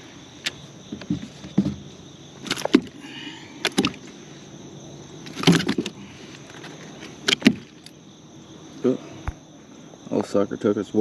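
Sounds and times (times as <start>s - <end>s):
knocks against kayak: 0.9s - 3.0s, 3.6s - 4.0s, 5.3s - 6.0s, 7.3s - 7.7s.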